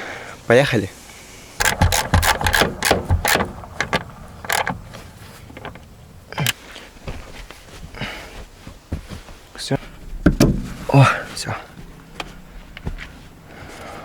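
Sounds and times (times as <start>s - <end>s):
metallic clicks of hand tools: 1.6s - 4.8s.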